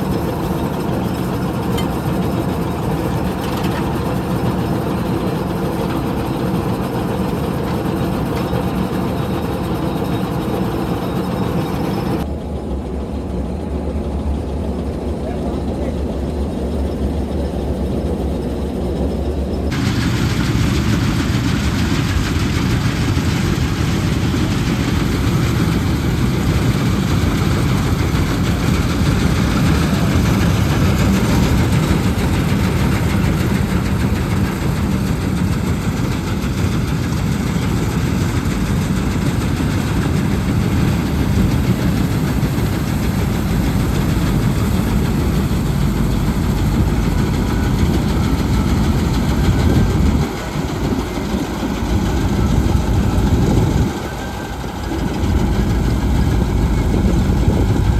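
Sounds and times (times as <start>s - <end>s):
diesel engine running: 0.0s - 57.9s.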